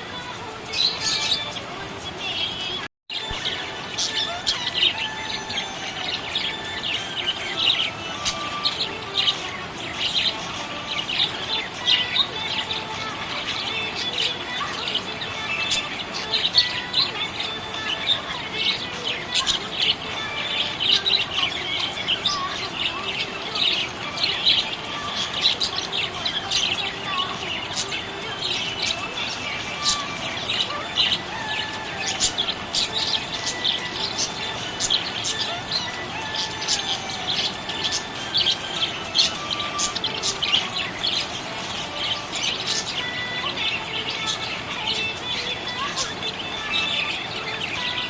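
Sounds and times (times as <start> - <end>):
budgerigars chirping: 3.2 - 48.0.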